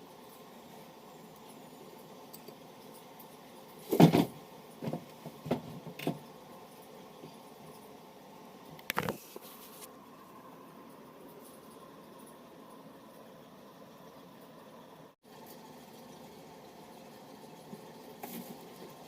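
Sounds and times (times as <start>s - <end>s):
faint background hum: 0.0s - 19.0s
knock with a rattle: 3.9s - 6.2s.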